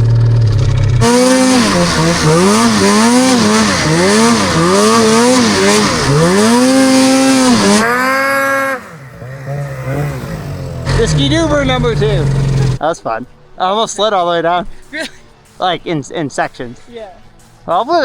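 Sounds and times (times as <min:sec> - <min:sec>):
snowmobile engine revving: 0:00.0 - 0:12.8.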